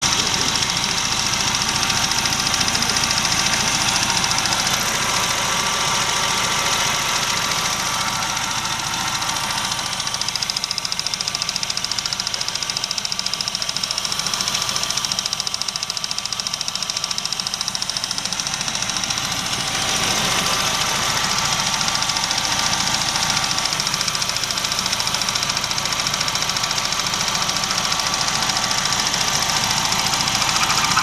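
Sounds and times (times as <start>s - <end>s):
car engine idling: 0.0s - 31.0s
high squealing whine: 30.0s - 31.0s.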